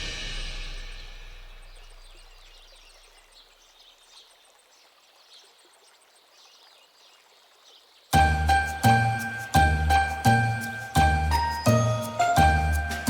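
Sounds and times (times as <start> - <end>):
music: 0.0 - 1.6, 8.2 - 13.0
jingling christmas-style music: 8.2 - 13.0.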